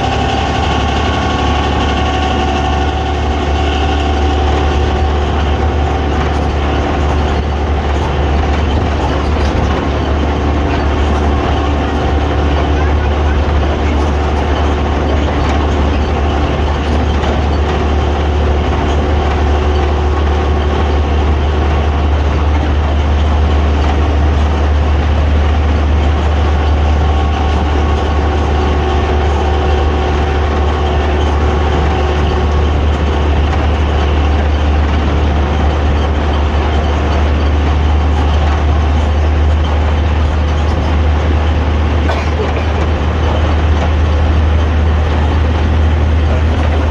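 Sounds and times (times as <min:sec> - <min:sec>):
bus engine droning: 0:00.0 - 0:46.9.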